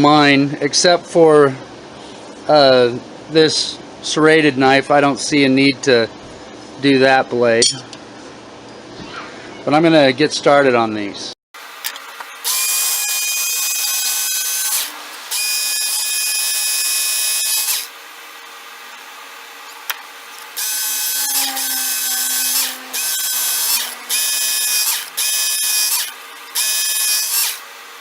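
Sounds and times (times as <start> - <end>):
electric belt sharpener motor whining: 12.4 - 18.0, 20.4 - 28.0.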